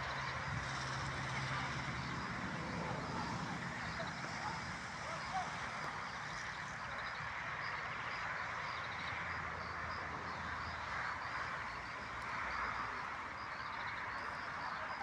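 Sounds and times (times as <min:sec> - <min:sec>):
dense buzz of calling animals: 0:00.0 - 0:07.7.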